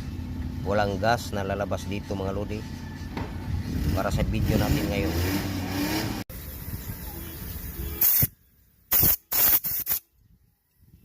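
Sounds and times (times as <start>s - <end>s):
pressurised spray hissing: 7.5s - 8.3s, 8.9s - 10.0s.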